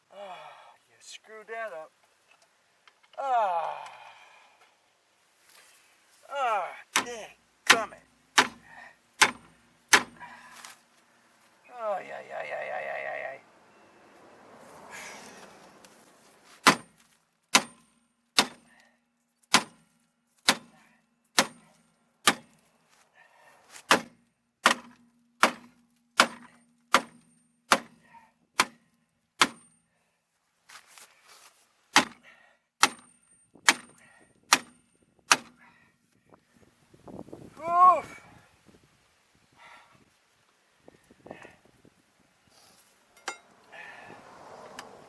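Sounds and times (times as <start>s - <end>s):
hammer striking metal wheel: 17.5s - 18.6s, 43.2s - 43.5s.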